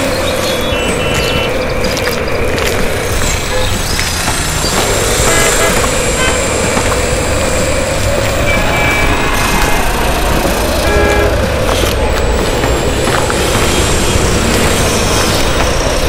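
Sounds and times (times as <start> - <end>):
traffic noise low rumble: 0.0 - 16.0
brief horn toots: 5.2 - 6.8, 8.4 - 10.0, 10.8 - 11.6.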